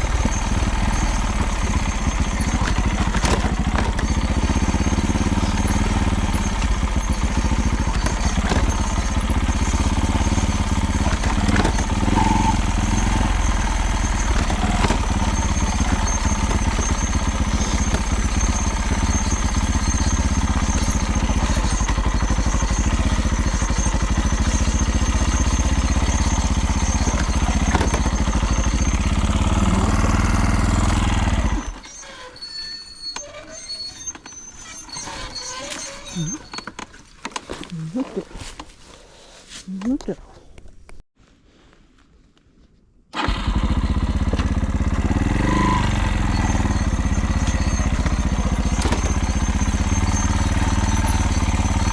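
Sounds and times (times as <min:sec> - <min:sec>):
vehicle engine running: 0:00.0 - 0:31.9, 0:43.2 - 0:51.9
engine rattling and clattering: 0:00.0 - 0:37.7, 0:43.2 - 0:51.9.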